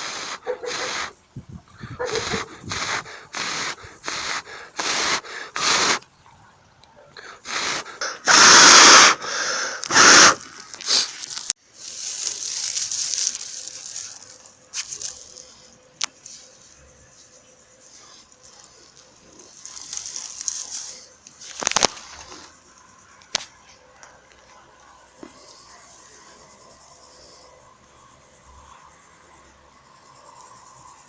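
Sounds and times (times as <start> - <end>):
hissing: 0.0 - 1.2, 1.8 - 6.1, 7.2 - 15.8
person blowing puffs: 0.0 - 6.1, 7.2 - 11.5.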